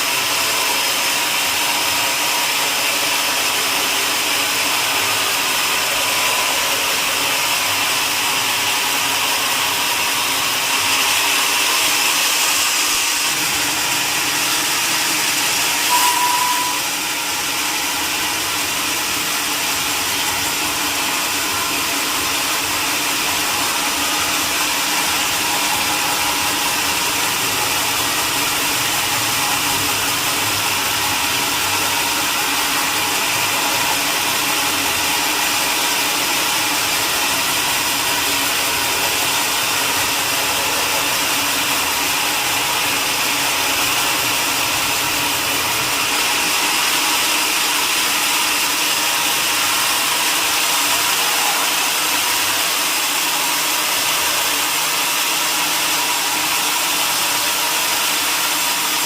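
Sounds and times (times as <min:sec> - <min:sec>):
sawmill machinery whining: 0:00.0 - 0:59.0
short high tone: 0:15.9 - 0:17.0.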